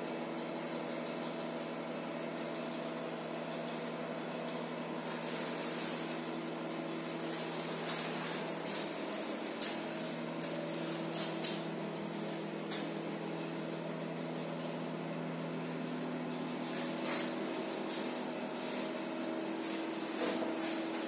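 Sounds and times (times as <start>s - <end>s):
machine humming: 4.7s - 21.0s.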